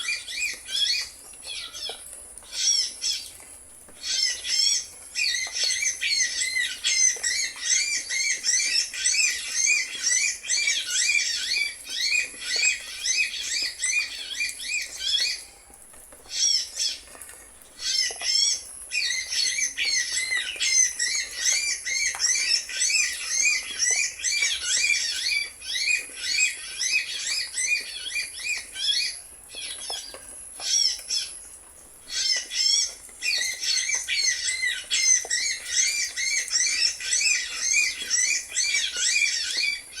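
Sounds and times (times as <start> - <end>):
birds chirping: 17.8 - 40.0.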